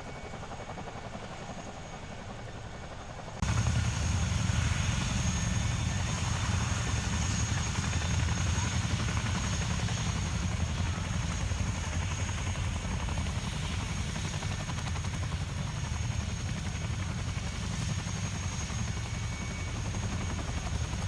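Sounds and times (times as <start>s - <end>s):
helicopter rotor rumble: 0.0s - 21.0s.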